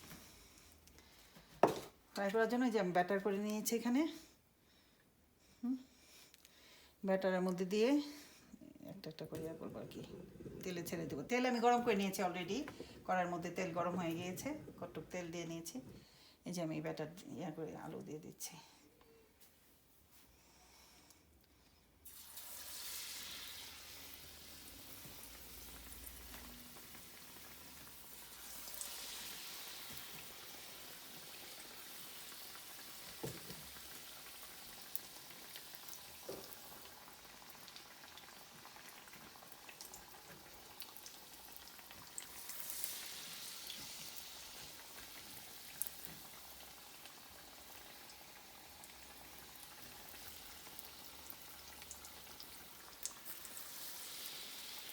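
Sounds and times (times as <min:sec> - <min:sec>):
food deep-frying in hot oil: 0:22.0 - 0:54.9.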